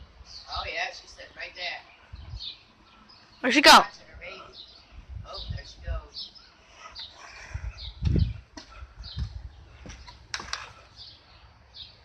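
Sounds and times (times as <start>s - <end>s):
small birds chirping: 0.0s - 12.0s
low rumble on microphone: 2.1s - 2.6s, 4.9s - 6.1s, 7.2s - 10.1s.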